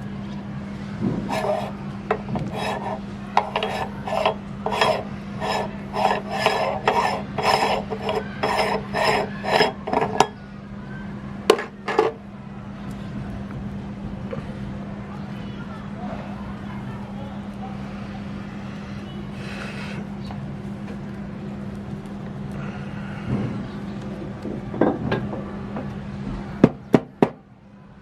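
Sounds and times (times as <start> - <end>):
steady low hum: 0.0 - 27.0
meat grinder crushing snacks: 1.3 - 10.4.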